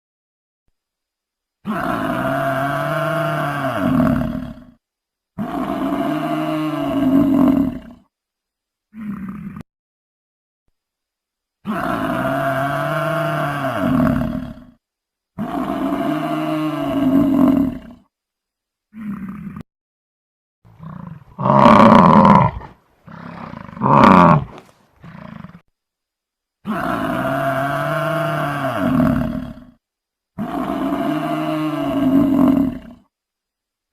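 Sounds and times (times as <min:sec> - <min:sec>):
buffalo bellowing: 0:20.8 - 0:25.4.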